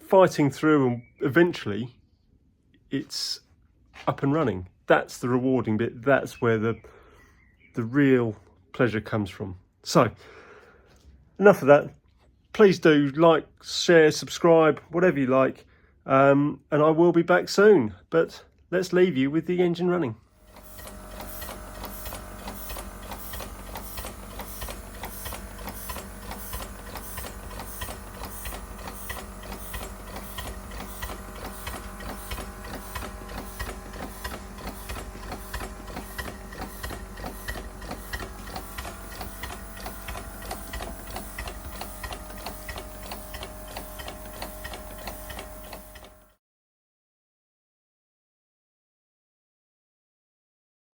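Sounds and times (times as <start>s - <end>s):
model steam engine ticking over: 20.4s - 46.3s.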